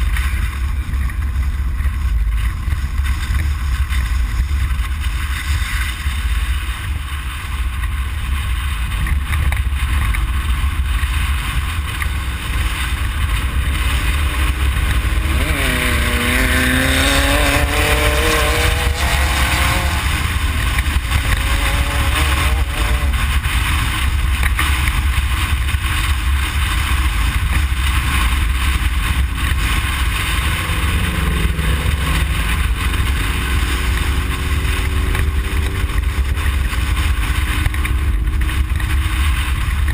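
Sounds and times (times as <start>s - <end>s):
chassis and tyres rumbling: 0.0s - 39.9s
engine accelerating: 10.9s - 39.9s.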